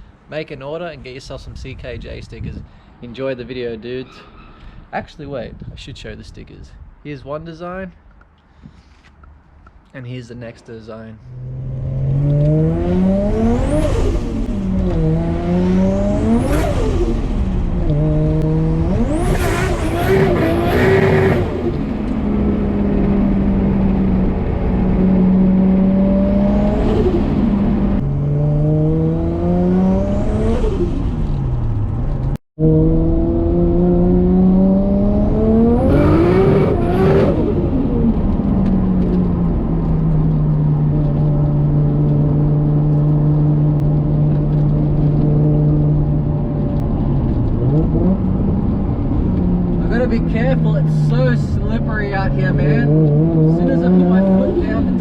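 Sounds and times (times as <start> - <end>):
car engine pulling hard: 11.2 - 55.0
high turbo whine: 11.2 - 55.0.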